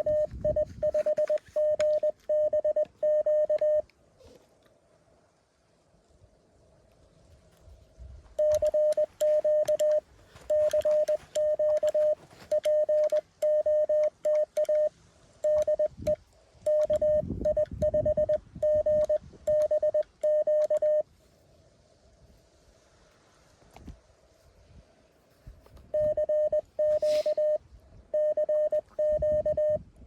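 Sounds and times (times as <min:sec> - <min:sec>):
morse code tone: 0:00.0 - 0:03.8, 0:08.4 - 0:21.0, 0:26.0 - 0:29.8
faint steady tone: 0:00.0 - 0:30.0.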